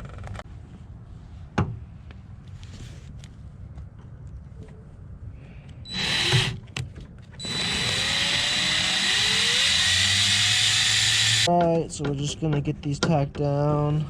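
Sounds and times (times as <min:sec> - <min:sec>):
power drill driving screw: 0:05.9 - 0:06.6, 0:07.4 - 0:11.5.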